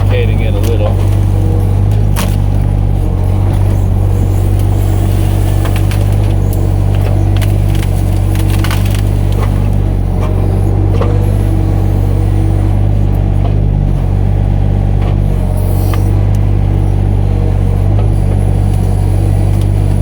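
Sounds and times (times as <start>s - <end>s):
wood cracking and splintering: 0.0s - 11.2s
excavator diesel engine running: 0.0s - 20.0s.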